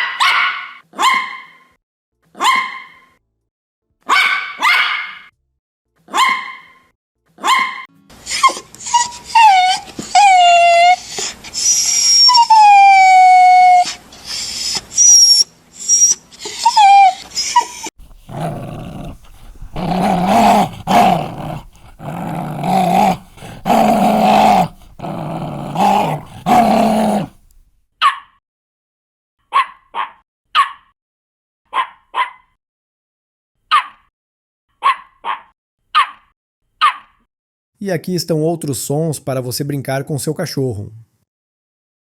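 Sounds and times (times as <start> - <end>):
dog barking harshly: 0.0 - 1.5, 2.4 - 3.0, 4.1 - 5.2, 6.1 - 6.7, 7.4 - 7.8, 18.0 - 28.2
dog whimpering and yelping: 7.4 - 27.5.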